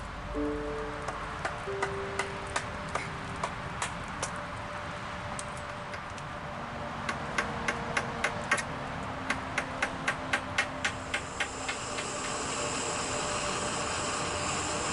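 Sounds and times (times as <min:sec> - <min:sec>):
steady rain: 0:08.7 - 0:14.9.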